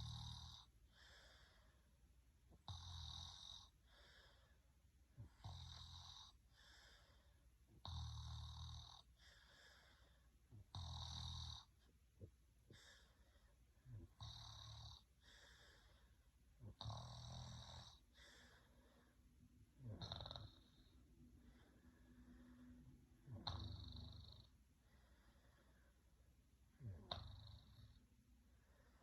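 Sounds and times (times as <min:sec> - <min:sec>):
person snoring: 0:16.6 - 0:18.7, 0:19.8 - 0:21.0, 0:21.7 - 0:24.5, 0:26.8 - 0:28.0.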